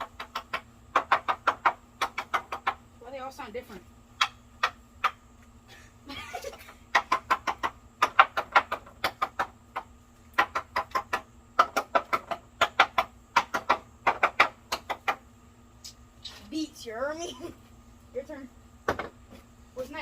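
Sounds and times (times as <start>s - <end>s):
knocks on wooden boards: 0.0s - 2.9s, 4.2s - 5.3s, 6.9s - 15.3s, 18.8s - 19.5s.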